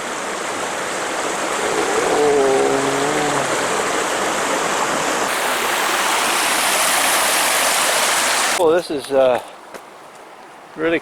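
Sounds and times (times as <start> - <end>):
waterfall rushing water: 0.0 - 8.6.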